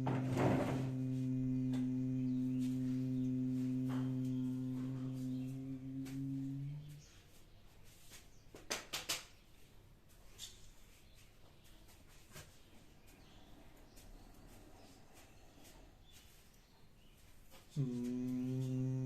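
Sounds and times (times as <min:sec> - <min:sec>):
man humming: 0:00.0 - 0:07.0, 0:17.7 - 0:19.0.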